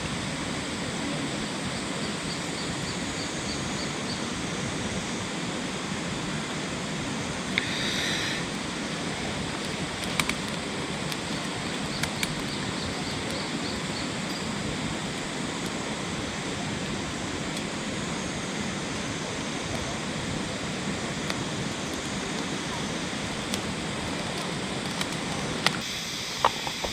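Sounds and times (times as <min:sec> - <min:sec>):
sharp clicks: 0:07.5 - 0:15.8, 0:21.2 - 0:25.8.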